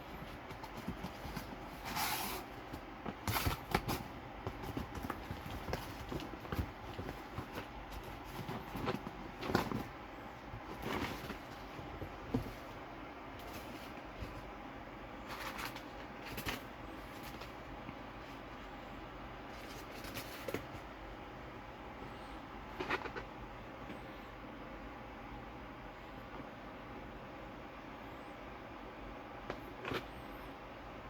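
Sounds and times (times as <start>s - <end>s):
low background hum: 0.0s - 31.0s
cardboard box being handled: 0.2s - 12.8s.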